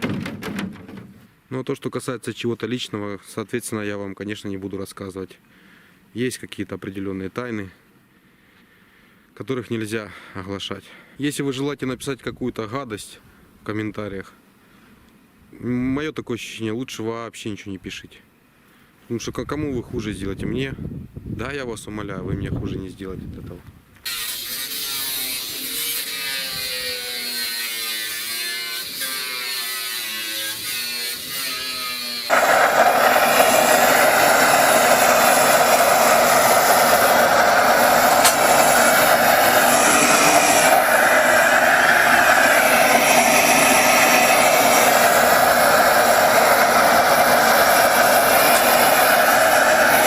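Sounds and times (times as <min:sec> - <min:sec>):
power tool whining: 0:24.1 - 0:50.0.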